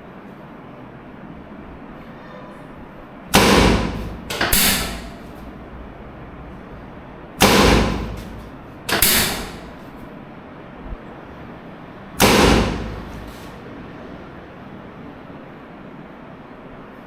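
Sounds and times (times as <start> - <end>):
loud thuds: 3.3 - 5.6, 7.3 - 10.0, 12.2 - 13.6.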